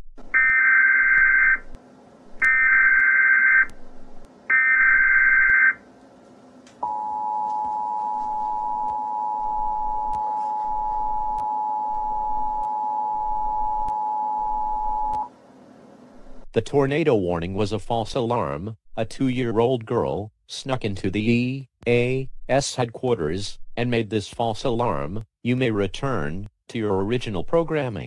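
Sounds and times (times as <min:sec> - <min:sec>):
screechy data bursts: 0:00.4 - 0:01.7, 0:02.4 - 0:03.8, 0:04.5 - 0:05.8.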